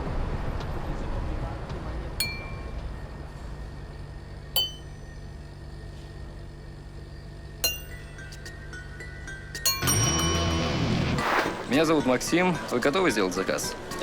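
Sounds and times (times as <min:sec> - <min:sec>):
low steady hum: 0:02.1 - 0:11.4
glass clinks: 0:02.2 - 0:02.8, 0:04.6 - 0:05.1, 0:07.6 - 0:08.2, 0:09.6 - 0:10.4.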